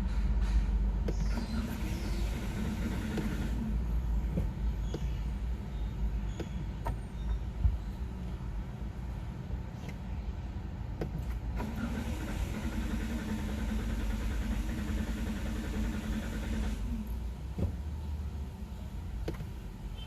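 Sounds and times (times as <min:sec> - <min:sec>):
car starter cranking: 0:01.1 - 0:03.7, 0:11.6 - 0:17.1.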